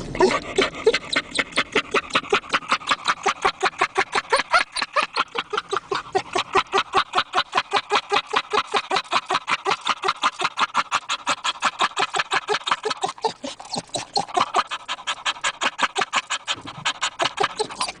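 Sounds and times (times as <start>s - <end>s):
dog panting huffs: 0.0s - 18.0s.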